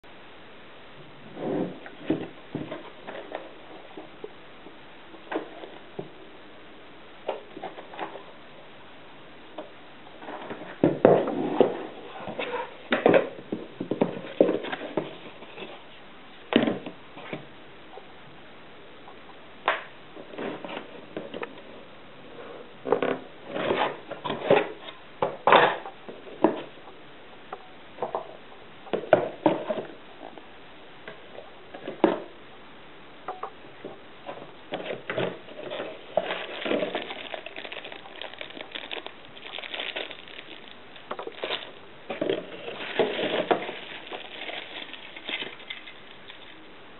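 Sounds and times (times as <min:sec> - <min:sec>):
packaging and parts handled: 0:34.7 - 0:46.7.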